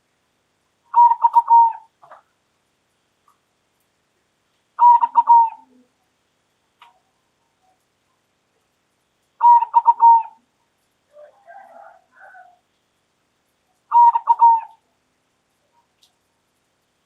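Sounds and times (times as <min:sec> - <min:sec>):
dove cooing: 0:00.9 - 0:02.3, 0:04.8 - 0:06.1, 0:09.4 - 0:12.7, 0:13.7 - 0:14.9.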